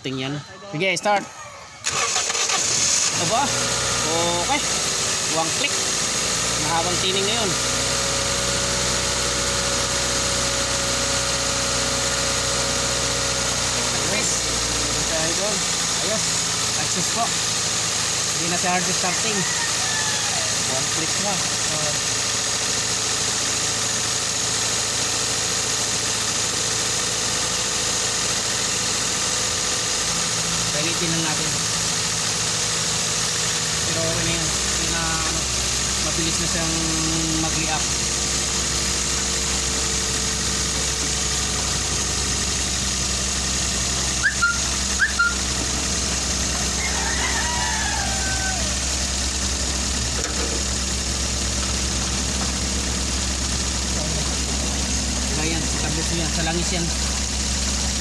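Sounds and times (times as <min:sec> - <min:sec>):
car engine idling: 0:00.0 - 0:58.0
short sharp chirps: 0:44.2 - 0:45.5
wavering falling whistle: 0:44.2 - 0:45.5.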